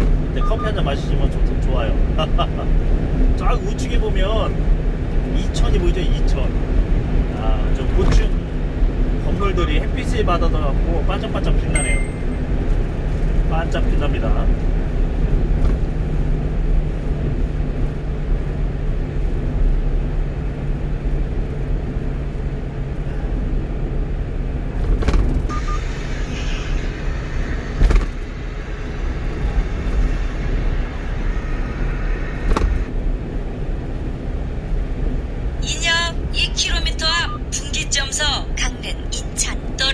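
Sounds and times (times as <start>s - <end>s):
road rumble: 0.0s - 39.9s
truck engine drone: 0.0s - 39.9s
sharp knocks: 32.4s - 32.9s.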